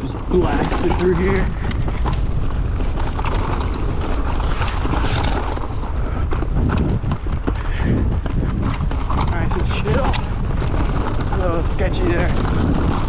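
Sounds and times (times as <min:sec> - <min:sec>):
tyres rumbling on dirt: 0:00.0 - 0:05.7, 0:07.0 - 0:13.0
bike rattling and knocking: 0:00.0 - 0:13.0
wind buffeting microphone: 0:00.0 - 0:13.0.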